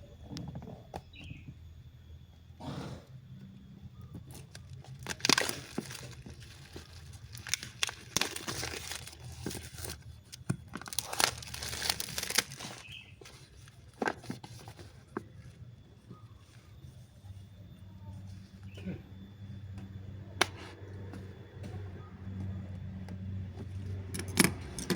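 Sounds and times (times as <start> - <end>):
packaging tearing and crinkling: 4.3 - 14.9.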